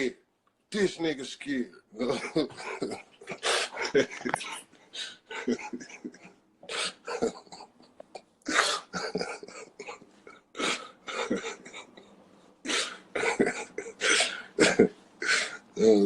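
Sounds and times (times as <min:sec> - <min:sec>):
man coughing: 0:08.5 - 0:11.9, 0:12.7 - 0:15.6.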